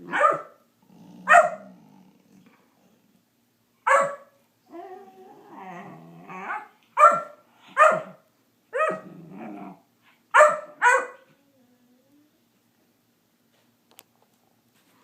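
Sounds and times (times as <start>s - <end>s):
puppy yapping: 0.0s - 0.6s, 1.3s - 1.6s, 3.9s - 4.3s, 6.3s - 9.1s, 10.4s - 11.3s
puppy growling: 0.8s - 3.1s, 4.7s - 6.7s, 8.9s - 9.9s.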